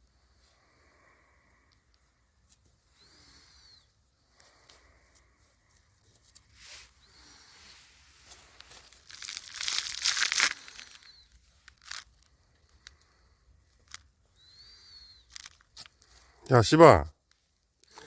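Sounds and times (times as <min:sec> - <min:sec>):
rustling and crinkling: 0:04.3 - 0:16.4.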